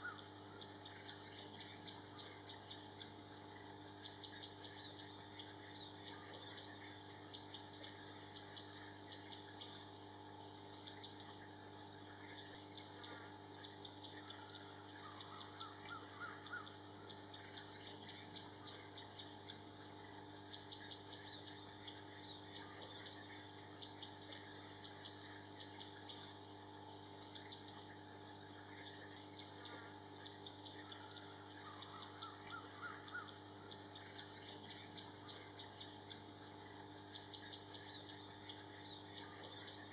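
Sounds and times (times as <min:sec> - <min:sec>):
songbird chirping: 0:00.0 - 0:03.3, 0:27.2 - 0:39.9.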